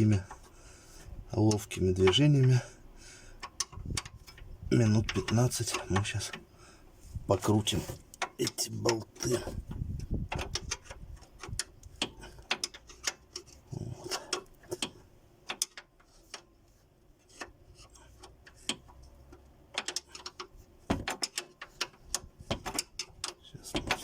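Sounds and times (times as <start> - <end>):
metal wrench clicking on bolt: 10.3 - 16.5, 17.3 - 20.5, 21.1 - 24.0.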